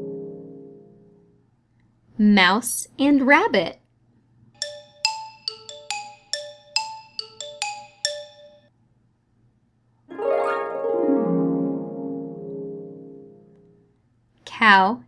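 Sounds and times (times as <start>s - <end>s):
plucked chime-like jingle: 4.6s - 8.6s.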